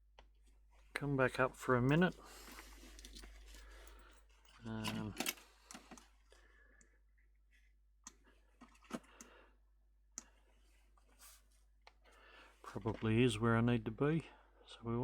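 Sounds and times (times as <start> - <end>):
light clicks and taps of tools: 10.1 - 10.4.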